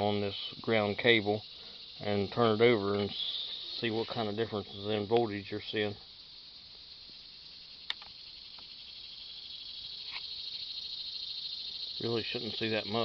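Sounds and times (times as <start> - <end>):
insects droning: 0.0 - 13.0
sharp click: 7.8 - 8.7.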